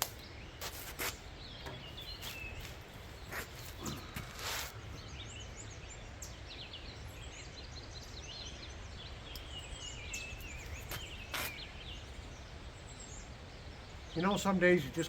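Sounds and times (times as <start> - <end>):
birds singing: 0.0 - 15.0.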